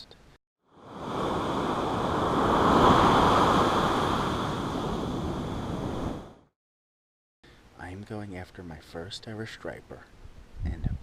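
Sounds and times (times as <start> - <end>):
ocean wave washing in and out: 0.7 - 6.5.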